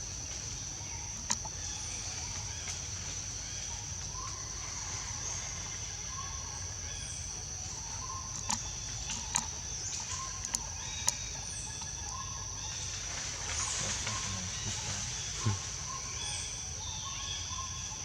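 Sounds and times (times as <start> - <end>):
sharp clicks: 1.2 - 1.5, 8.3 - 12.0.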